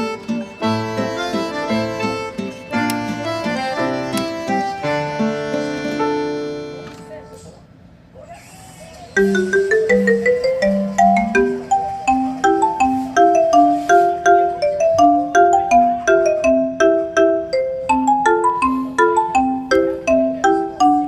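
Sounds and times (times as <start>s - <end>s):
bouncy marimba tune: 9.2s - 21.0s.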